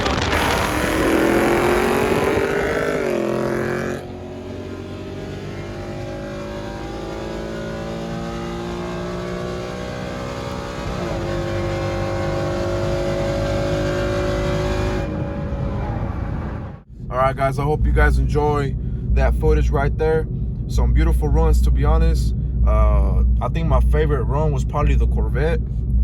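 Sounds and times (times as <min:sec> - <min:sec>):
car engine accelerating: 0:00.0 - 0:26.0.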